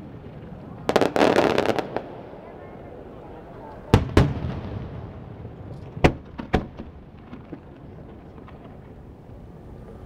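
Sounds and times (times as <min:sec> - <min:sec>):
fireworks bangs: 0:00.0 - 0:02.5, 0:03.9 - 0:07.2
fireworks crackles: 0:00.0 - 0:03.1.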